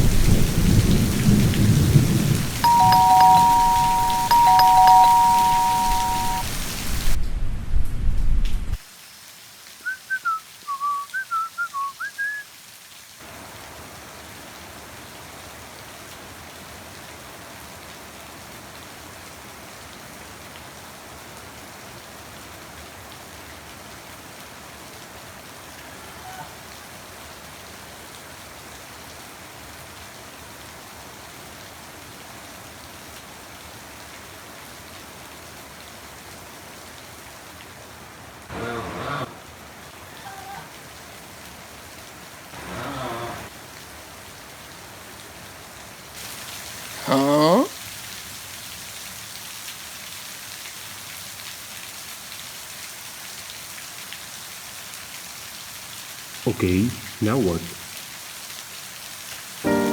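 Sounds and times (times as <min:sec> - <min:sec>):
steady rain falling: 0:00.0 - 0:07.2, 0:08.2 - 0:59.9
whistled bird chirps: 0:09.8 - 0:12.5.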